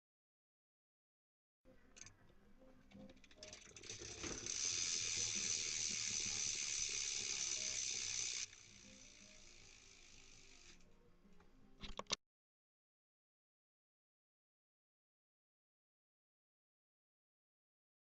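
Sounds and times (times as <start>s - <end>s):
bicycle hub freewheel buzzing: 3.1s - 10.8s.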